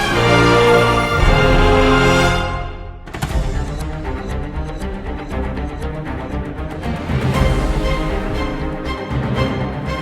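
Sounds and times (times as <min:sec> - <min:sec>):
background music with low beat: 0:03.0 - 0:10.0.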